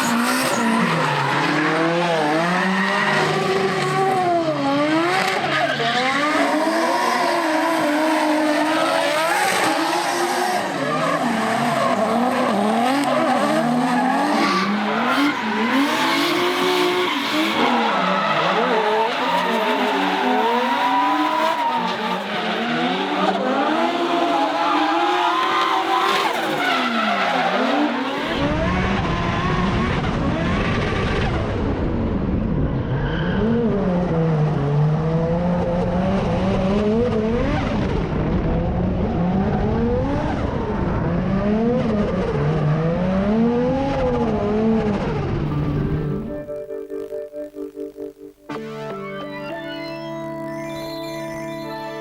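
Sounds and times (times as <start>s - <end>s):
tyres squealing and skidding: 0.0s - 3.8s, 4.6s - 29.6s, 49.2s - 52.0s
car engines revving hard: 0.0s - 46.3s.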